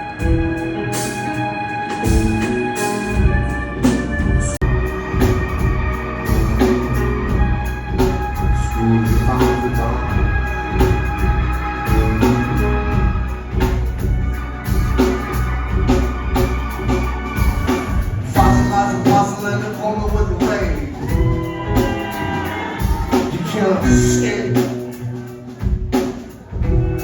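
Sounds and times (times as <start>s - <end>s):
bass: 0.0s - 27.0s
keyboard notes: 0.0s - 27.0s
drum beat: 2.0s - 27.0s.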